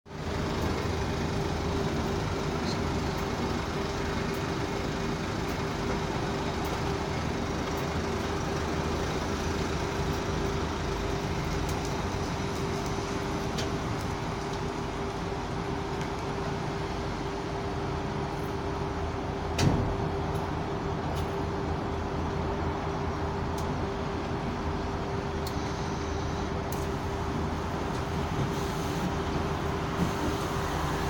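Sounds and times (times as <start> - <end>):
constant whine: 0.1 - 31.0.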